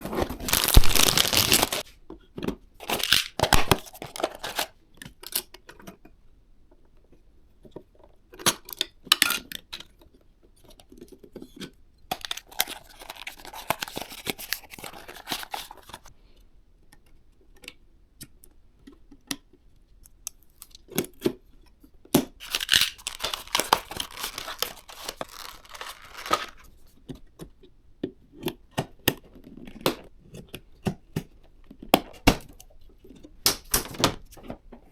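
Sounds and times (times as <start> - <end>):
packaging tearing and rustling: 0.0 - 1.8, 2.8 - 4.7, 12.2 - 16.1, 22.4 - 26.7.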